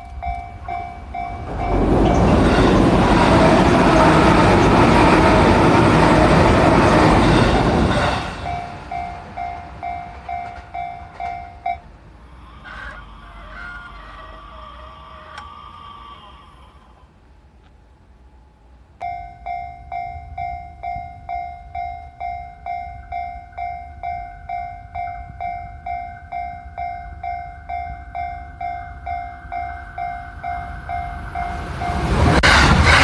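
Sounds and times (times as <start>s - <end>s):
level crossing warning bell: 0.0s - 12.2s, 18.2s - 32.4s
train running noise: 0.0s - 33.0s.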